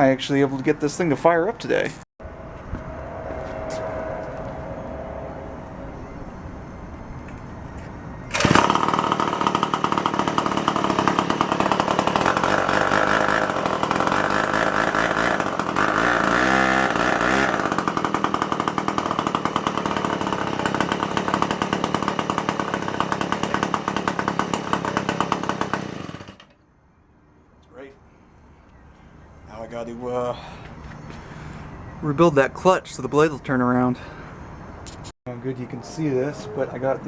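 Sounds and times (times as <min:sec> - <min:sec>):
chainsaw engine running: 0:07.7 - 0:26.5.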